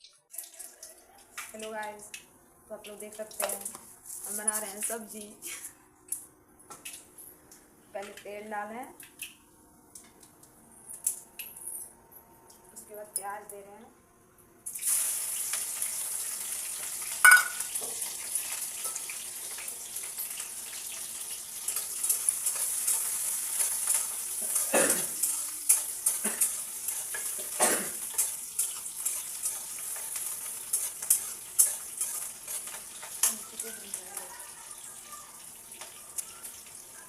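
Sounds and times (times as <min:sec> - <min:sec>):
onion sizzling in hot oil: 0:14.6 - 0:37.0
utensil knocking against pan: 0:17.3 - 0:17.6.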